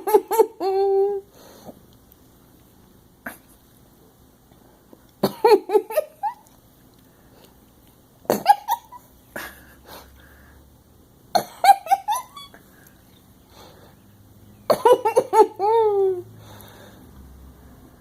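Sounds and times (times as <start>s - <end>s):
person laughing: 11.5s - 12.6s, 14.8s - 16.3s.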